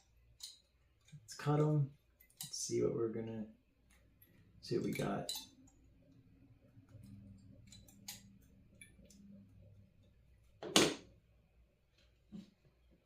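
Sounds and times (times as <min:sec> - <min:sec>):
wire cutters clicking: 0:00.3 - 0:02.6, 0:06.9 - 0:09.2.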